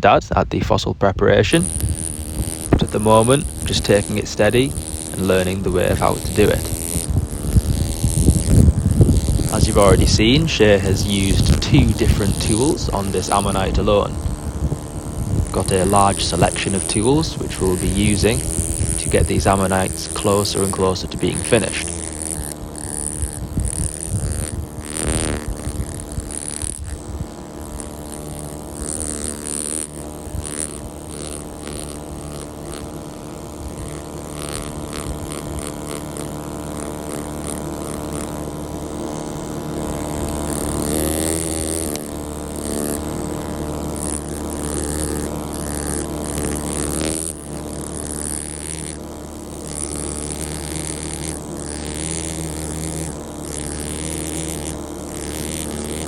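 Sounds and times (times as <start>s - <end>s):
air scribe buzzing: 0.0s - 56.0s
air scribe rattling on stone: 1.5s - 38.3s.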